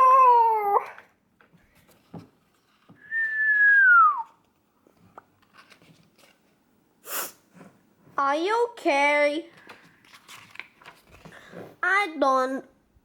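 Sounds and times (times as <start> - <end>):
person whistling a note: 3.0 - 4.4
short hiss: 7.0 - 7.4.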